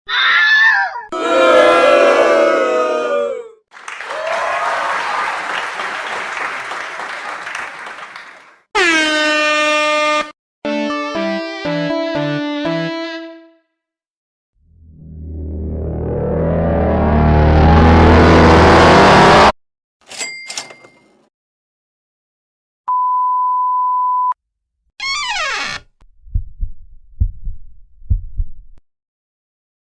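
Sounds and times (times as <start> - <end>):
crowd cheering and applauding: 3.7 - 8.6
tone sliding down in pitch: 14.7 - 18.3
censor bleep: 22.9 - 24.4
heartbeat thumps: 26.2 - 28.8.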